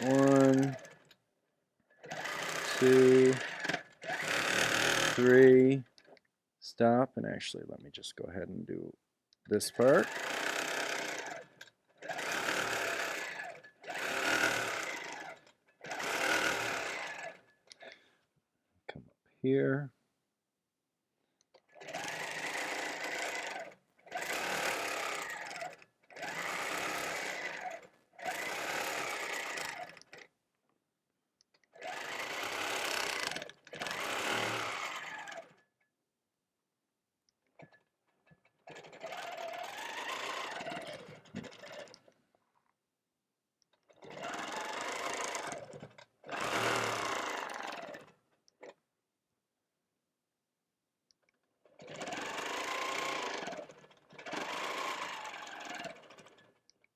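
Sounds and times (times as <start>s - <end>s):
quilting machine stitching: 0.0s - 1.2s, 1.9s - 6.2s, 9.7s - 18.1s, 21.6s - 30.3s, 31.5s - 35.7s, 37.5s - 42.2s, 43.7s - 48.8s, 51.6s - 56.8s.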